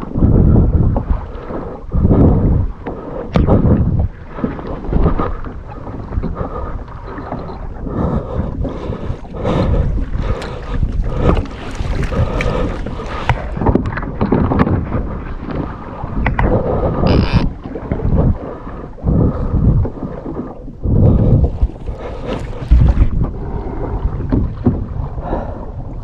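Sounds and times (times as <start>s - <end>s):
water lapping against kayak hull: 0.0s - 26.0s
wind gusting over microphone: 0.0s - 26.0s.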